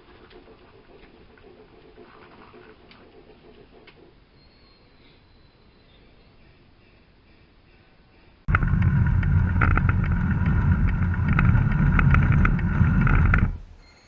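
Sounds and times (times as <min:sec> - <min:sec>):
motor whine: 0:08.5 - 0:13.7
model train rumble: 0:08.5 - 0:13.8
wheels clicking on track: 0:08.5 - 0:13.8.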